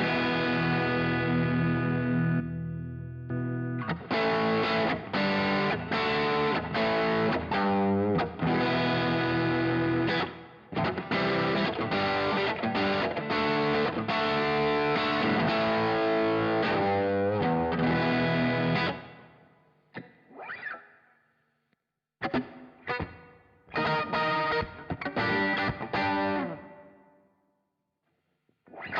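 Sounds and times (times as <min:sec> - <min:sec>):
overdriven electric guitar playing: 0:00.0 - 0:19.4, 0:20.0 - 0:21.0, 0:22.2 - 0:27.1.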